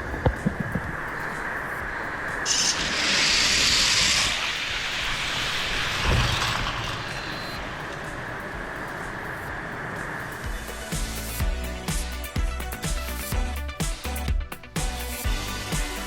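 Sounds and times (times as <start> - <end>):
heavy rain: 2.4 - 8.8
toy cars rolling down track: 2.5 - 8.4.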